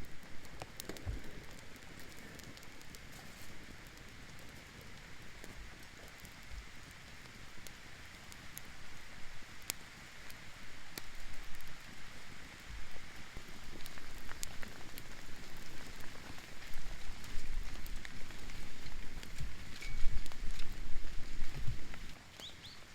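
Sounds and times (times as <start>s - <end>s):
rain falling: 0.0s - 22.9s.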